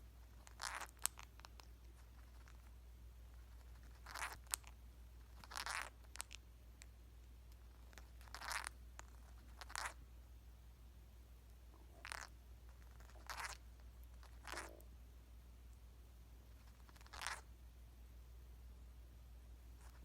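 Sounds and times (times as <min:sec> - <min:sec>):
parrot grinding beak: 0:00.4 - 0:01.6, 0:03.6 - 0:04.7, 0:05.3 - 0:06.4, 0:07.8 - 0:10.0, 0:11.9 - 0:13.6, 0:14.2 - 0:14.8, 0:16.6 - 0:17.4.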